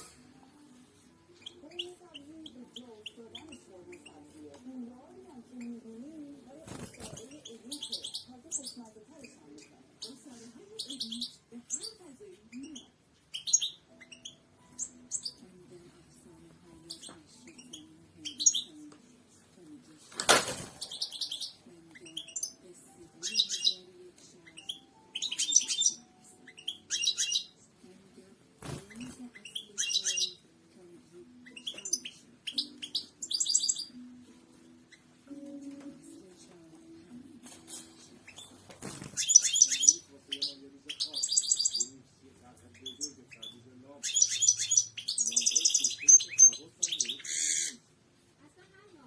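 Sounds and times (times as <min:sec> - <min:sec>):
finch twittering song: 0:00.2 - 0:04.5, 0:05.4 - 0:15.5, 0:16.8 - 0:18.9, 0:20.8 - 0:27.7, 0:28.5 - 0:30.5, 0:31.3 - 0:36.2, 0:37.6 - 0:42.0, 0:42.7 - 0:47.8.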